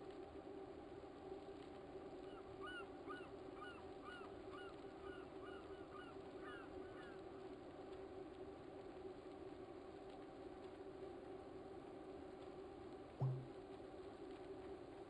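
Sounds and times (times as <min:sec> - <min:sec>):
faint low hum: 0:00.0 - 0:15.0
bird calling: 0:02.3 - 0:07.2.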